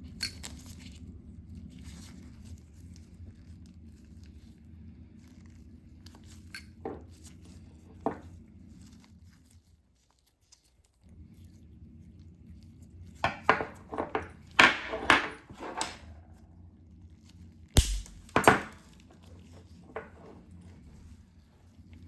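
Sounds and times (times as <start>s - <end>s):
steady low hum: 17.8s - 18.8s.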